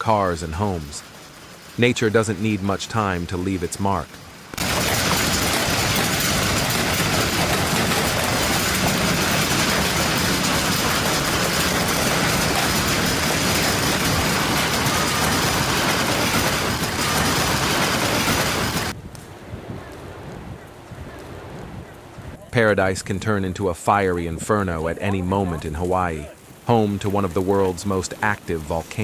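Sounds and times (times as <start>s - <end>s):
hailstones pelting down: 0.0s - 19.0s, 24.9s - 29.0s.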